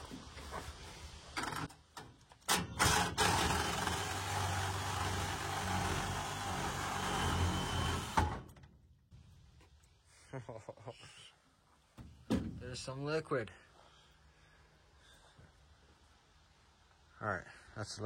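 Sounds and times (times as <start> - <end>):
power saw cutting: 2.8 - 8.4.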